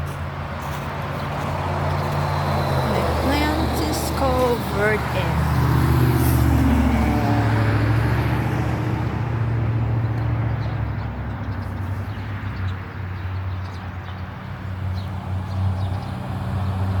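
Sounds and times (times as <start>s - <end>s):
crunching footsteps: 0.0s - 5.2s
road traffic rumble: 0.0s - 17.0s.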